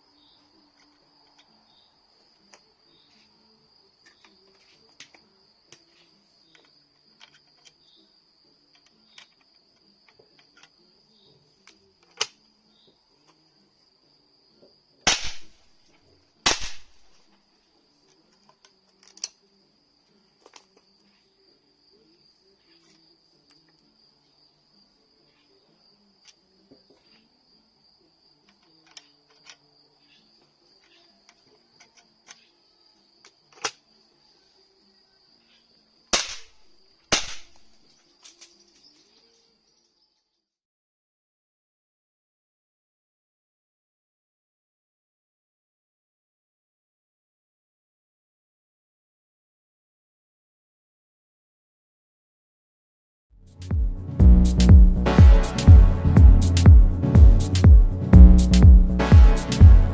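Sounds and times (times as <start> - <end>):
crickets chirring: 0.0 - 40.1
rifle shots: 15.1 - 15.6, 16.5 - 17.2, 36.2 - 37.7.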